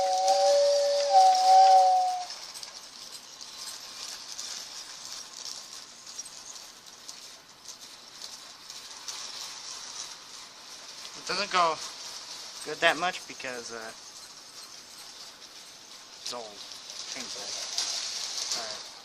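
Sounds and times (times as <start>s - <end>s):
two-tone train whistle: 0.0s - 2.4s
toy train motor whirring: 0.0s - 19.0s
person talking: 12.7s - 14.0s.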